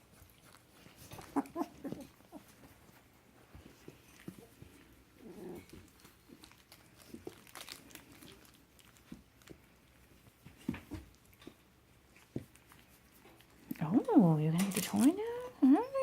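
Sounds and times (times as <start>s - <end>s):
paws and claws scuffling: 0.0s - 15.2s
puppy vocalisation: 0.8s - 2.7s, 15.0s - 16.0s.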